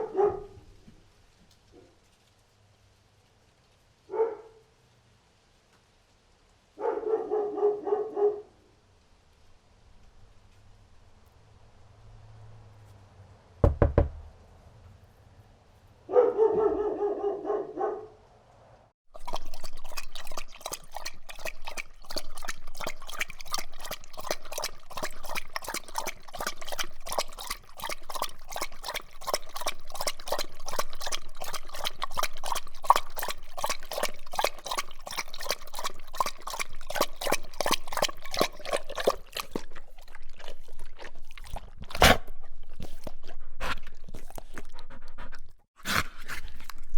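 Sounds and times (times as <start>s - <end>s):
thump: 13.6s - 14.3s
dog lapping water: 19.0s - 46.9s
short dog vocal: 27.0s - 46.4s.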